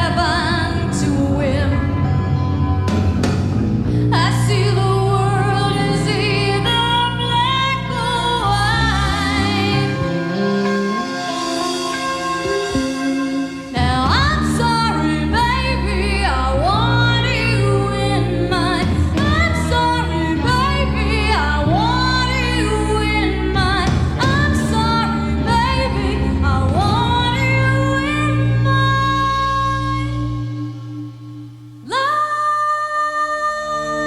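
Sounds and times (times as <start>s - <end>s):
woman singing: 0.0s - 2.5s, 4.1s - 12.6s, 13.6s - 30.8s, 31.8s - 34.0s
live band playing: 0.0s - 31.9s
bass line: 0.0s - 32.5s
keyboard chords: 0.0s - 34.0s.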